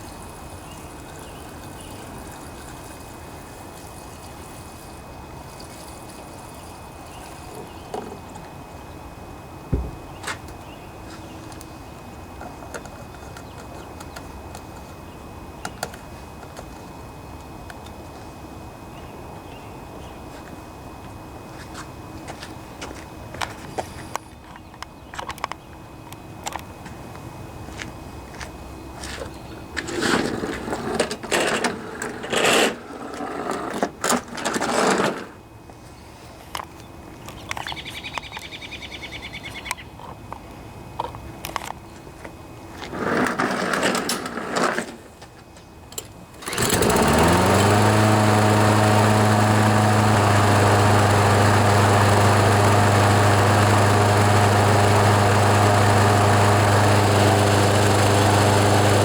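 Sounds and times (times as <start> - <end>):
lawnmower engine starting and running: 9.1 - 11.6, 29.8 - 35.4, 42.6 - 45.2, 45.9 - 59.0.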